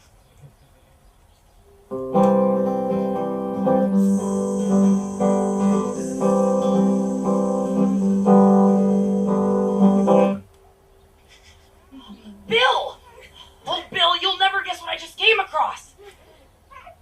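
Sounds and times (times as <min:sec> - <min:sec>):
acoustic guitar chords: 0:01.9 - 0:10.5.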